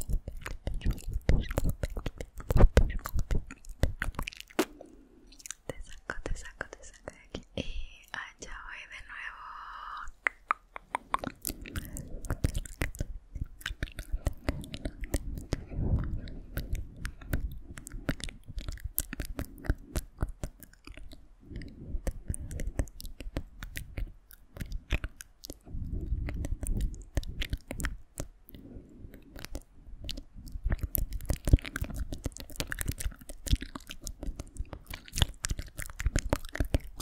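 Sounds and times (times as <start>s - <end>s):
wet mouth clicks and smacks: 0.0s - 7.5s, 10.0s - 37.0s
soft low rumble: 11.1s - 37.0s.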